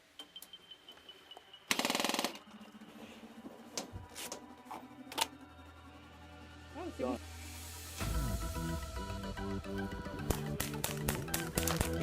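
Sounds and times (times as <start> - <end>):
airsoft gun burst: 1.7 - 2.4.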